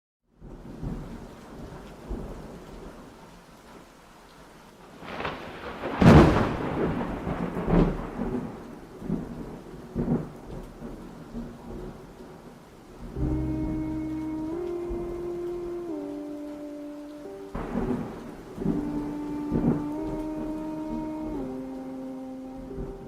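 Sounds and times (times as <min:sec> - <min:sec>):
steady rain: 0:00.2 - 0:23.0
thunder clap: 0:05.0 - 0:12.0, 0:13.0 - 0:23.0
thunder rumbling: 0:05.0 - 0:23.0.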